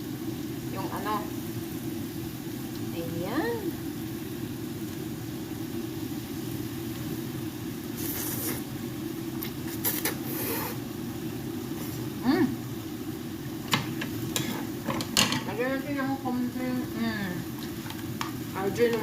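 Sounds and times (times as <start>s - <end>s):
low mechanical hum: 0.0s - 19.0s
cookware hissing and scraping: 6.0s - 19.0s
person humming: 12.2s - 12.6s.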